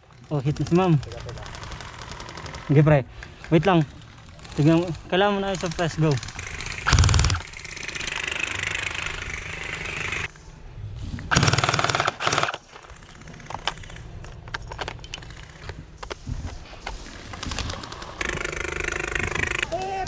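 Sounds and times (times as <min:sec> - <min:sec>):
gel blaster firing bursts: 0:05.5 - 0:10.3, 0:11.3 - 0:12.6, 0:17.7 - 0:19.8.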